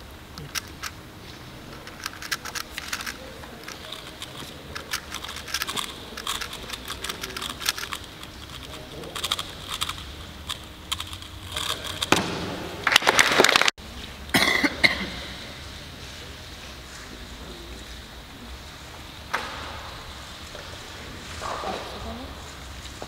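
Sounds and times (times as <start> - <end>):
puzzle cube plastic clicks: 1.8 - 12.2.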